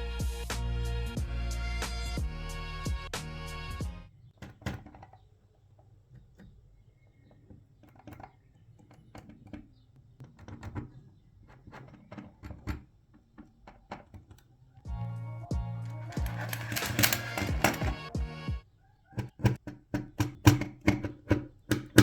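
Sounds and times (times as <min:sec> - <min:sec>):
plastic pieces clicking together: 0:15.8 - 0:18.1, 0:19.2 - 0:22.0.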